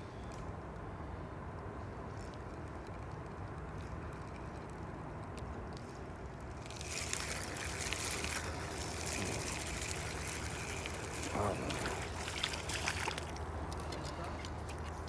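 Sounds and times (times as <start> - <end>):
water rushing from dam: 6.6 - 13.7.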